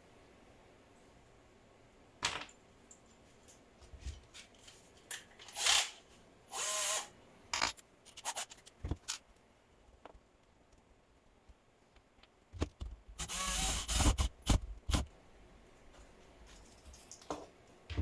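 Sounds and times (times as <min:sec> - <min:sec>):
small power tool whirring: 0:05.6 - 0:07.1, 0:13.2 - 0:15.0
tools clicking and knocking: 0:07.6 - 0:09.2.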